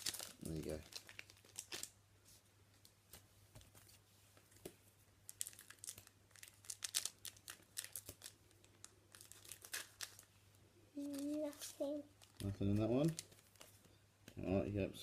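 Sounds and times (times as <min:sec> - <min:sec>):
wrapper crinkling: 0:00.0 - 0:02.0, 0:05.2 - 0:10.3, 0:11.0 - 0:13.9.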